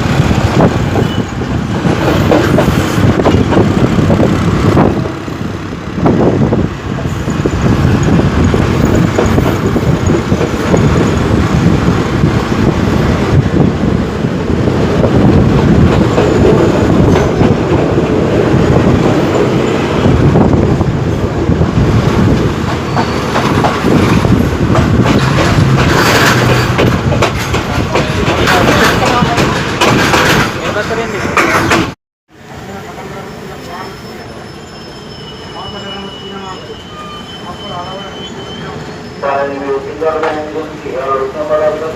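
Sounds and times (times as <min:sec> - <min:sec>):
train wheels clattering over rails: 0:00.0 - 0:05.4, 0:06.0 - 0:13.8, 0:14.4 - 0:32.0.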